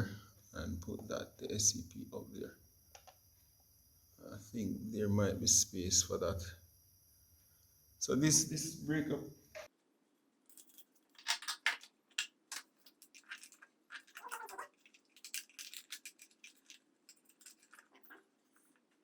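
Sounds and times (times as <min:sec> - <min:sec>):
faint steady hum: 0:00.0 - 0:19.0
small parts clicking and scraping: 0:10.4 - 0:19.0.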